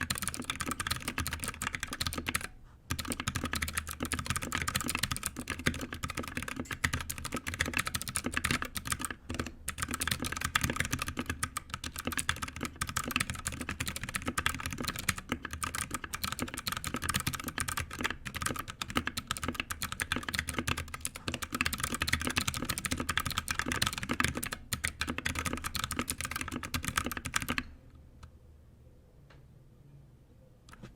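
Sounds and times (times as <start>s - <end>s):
fast mechanical keyboard typing: 0.0s - 27.7s.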